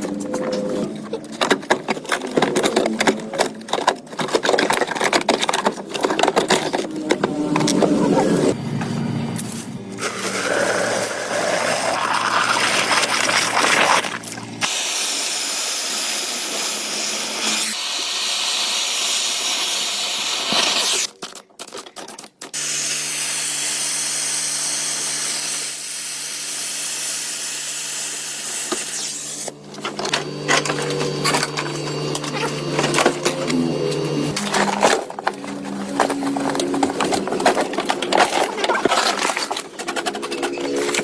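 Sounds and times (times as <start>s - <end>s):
power tool motor humming: 22.6s - 38.0s.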